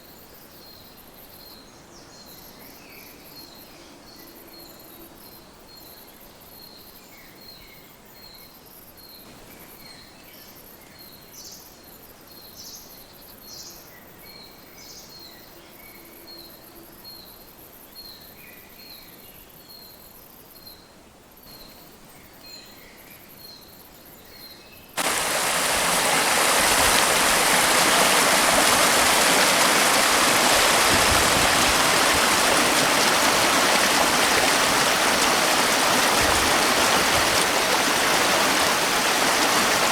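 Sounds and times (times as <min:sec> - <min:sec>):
bird calls: 0:25.0 - 0:39.9
river rushing: 0:25.0 - 0:39.9.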